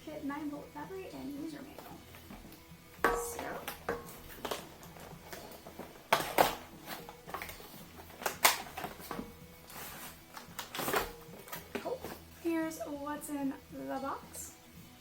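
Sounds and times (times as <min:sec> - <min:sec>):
cardboard box rustling and scraping: 0:08.8 - 0:12.2.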